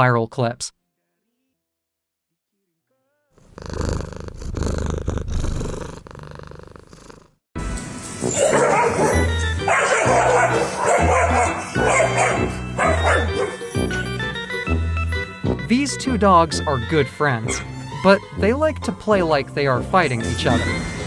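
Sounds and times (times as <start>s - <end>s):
dogs growling: 3.4s - 7.4s, 8.3s - 14.1s
dogs barking: 8.3s - 14.0s.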